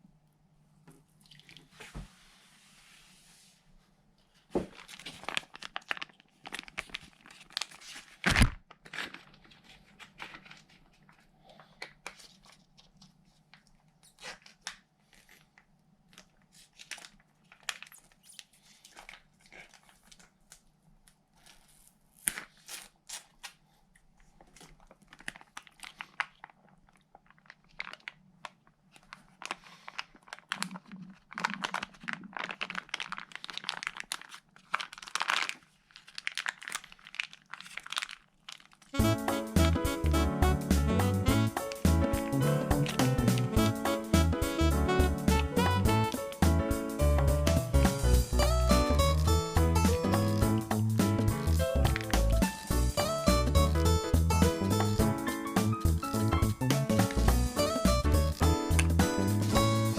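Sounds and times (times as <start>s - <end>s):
plastic pouch crinkling and tearing: 4.6s - 39.4s, 48.1s - 54.3s, 55.7s - 59.9s.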